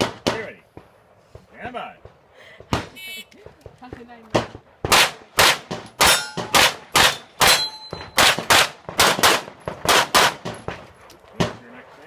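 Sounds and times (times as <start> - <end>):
handgun shots: 4.4 - 10.8
metallic rings of steel targets: 6.0 - 8.3.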